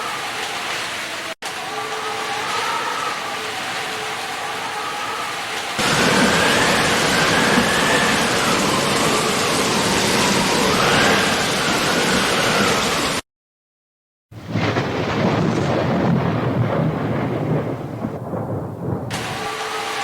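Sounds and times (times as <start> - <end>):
heavy rain: 0.0 - 13.2, 14.4 - 20.0.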